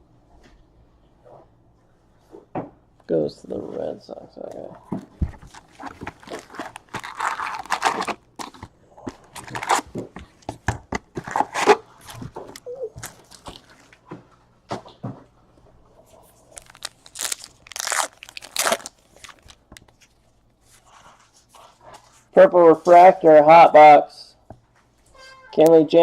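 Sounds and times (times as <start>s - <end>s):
cards rustling: 5.3s - 13.9s, 16.4s - 21.6s
foil wrappers tearing and crinkling: 5.4s - 10.0s, 13.0s - 13.8s, 16.4s - 20.2s.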